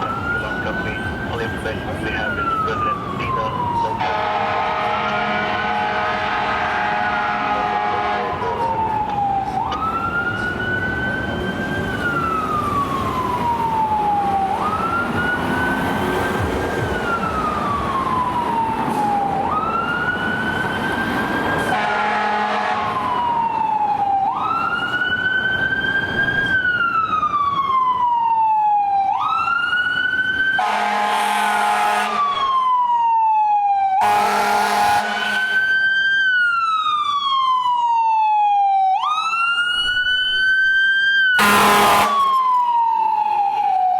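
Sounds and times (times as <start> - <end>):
fire engine siren wailing: 0.0 - 43.9
air horn blasts: 4.0 - 8.5, 21.7 - 23.0, 30.6 - 32.4, 34.0 - 35.7, 41.4 - 42.4.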